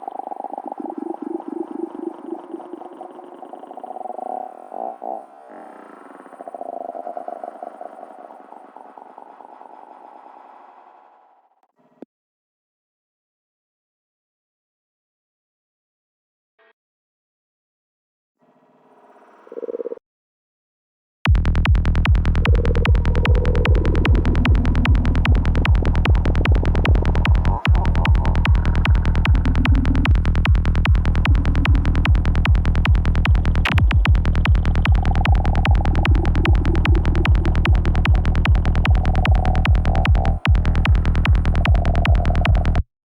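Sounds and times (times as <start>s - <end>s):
warped pitched effect sounds: 0.0s - 5.5s, 21.3s - 42.8s
psytrance kick and bass beat: 21.3s - 42.9s.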